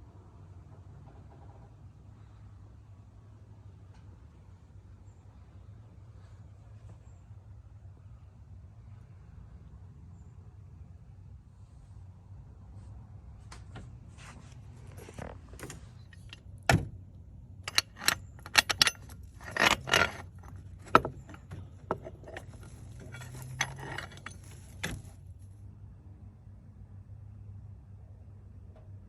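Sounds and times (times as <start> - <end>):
metal tools clinking: 15.6 - 16.8, 17.7 - 25.2.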